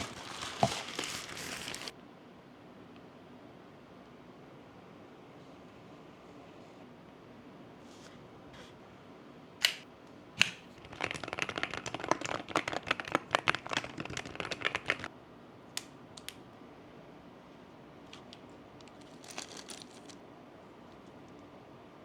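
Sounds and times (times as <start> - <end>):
rapid typing on keyboard: 10.8 - 15.1.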